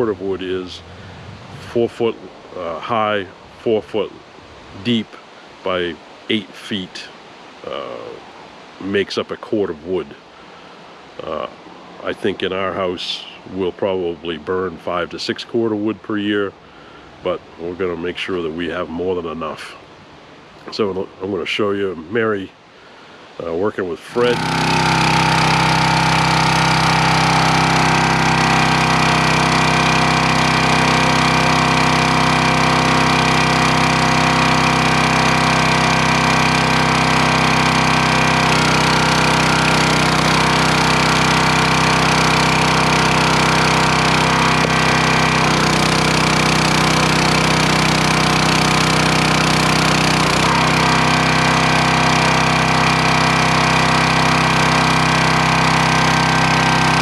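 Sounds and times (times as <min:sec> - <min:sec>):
wood splitter engine running: 0:00.0 - 0:03.0, 0:07.6 - 0:09.0, 0:24.0 - 0:57.0.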